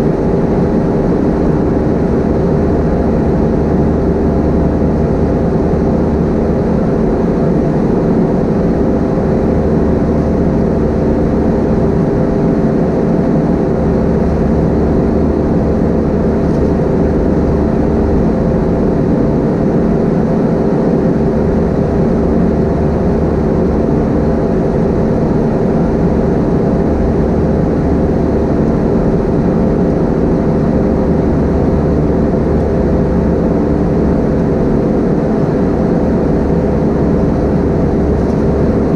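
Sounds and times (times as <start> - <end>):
jet engine drone: 0.0 - 38.9.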